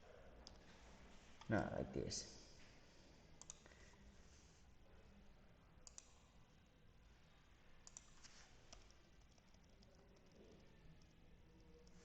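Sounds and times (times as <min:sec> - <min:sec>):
computer mouse clicks: 0:00.4 - 0:00.7, 0:03.4 - 0:03.7, 0:05.8 - 0:06.4, 0:07.8 - 0:12.0.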